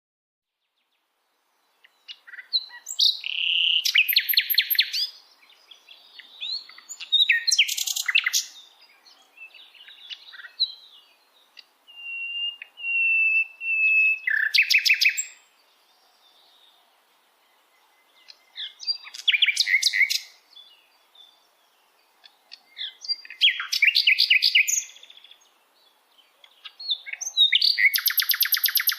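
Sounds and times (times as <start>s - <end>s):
songbird singing trills and whistles: 1.3s - 28.9s.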